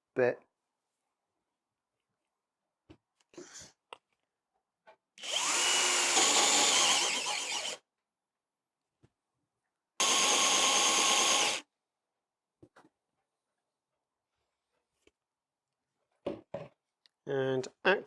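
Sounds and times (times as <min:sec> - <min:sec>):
hand drill boring into wood: 0:05.2 - 0:07.8, 0:10.0 - 0:11.6.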